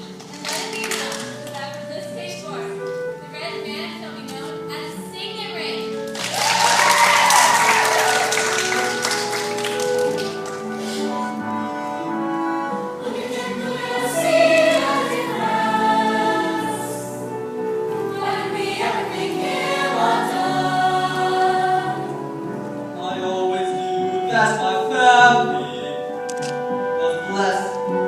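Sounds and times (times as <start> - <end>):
musical accompaniment: 0.0 - 28.0
young voices singing together: 12.8 - 26.1.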